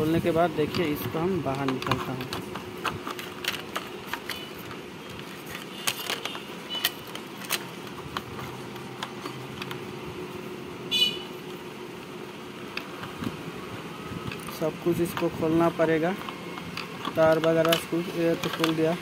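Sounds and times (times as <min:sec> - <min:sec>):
plastic clicks and taps: 0:00.6 - 0:09.8, 0:16.2 - 0:19.0.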